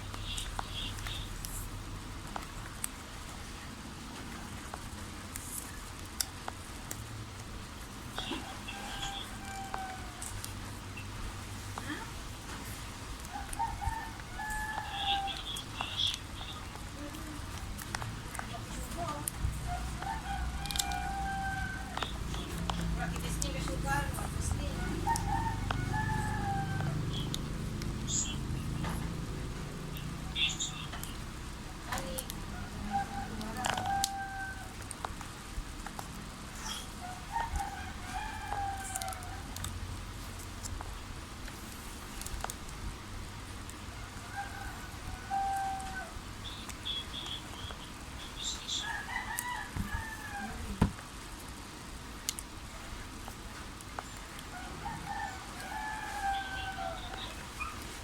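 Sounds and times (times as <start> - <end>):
rooster crowing: 8.2 - 10.4, 13.3 - 15.5, 19.7 - 22.3, 24.6 - 27.3, 32.5 - 34.8, 37.0 - 39.6, 43.9 - 46.2, 48.7 - 50.8, 54.5 - 57.5.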